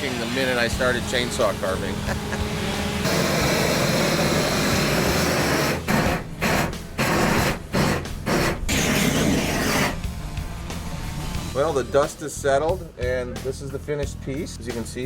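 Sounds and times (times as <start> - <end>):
chainsaw cutting wood: 0.0 - 10.1.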